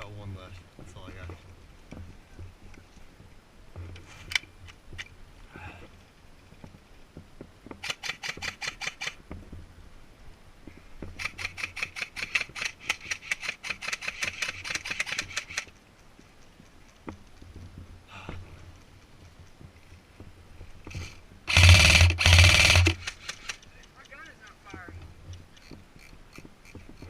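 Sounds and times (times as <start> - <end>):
airsoft rifle rapid shots: 7.8 - 9.2, 11.2 - 15.6, 21.5 - 23.6.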